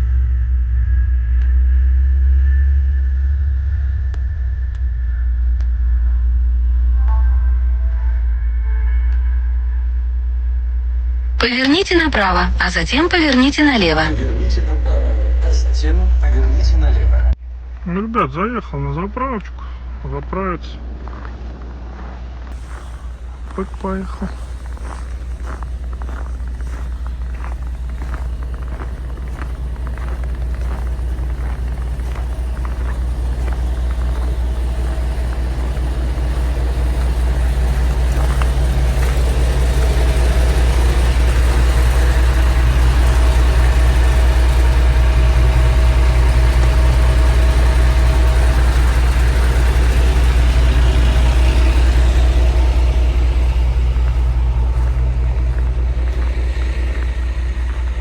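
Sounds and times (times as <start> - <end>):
truck engine under load: 11.4 - 14.2, 22.5 - 58.0.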